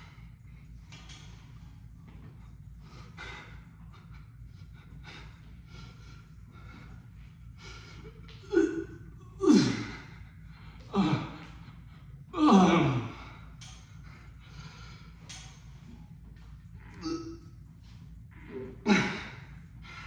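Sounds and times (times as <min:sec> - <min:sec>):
man breathing hard: 0:02.7 - 0:08.6, 0:09.5 - 0:15.6.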